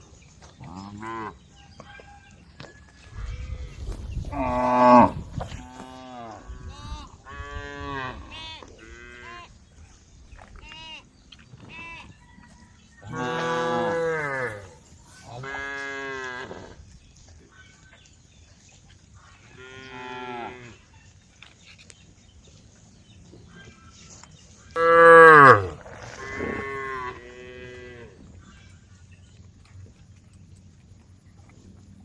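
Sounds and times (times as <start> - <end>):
cows mooing: 4.3 - 6.4, 13.1 - 14.8, 24.8 - 28.1.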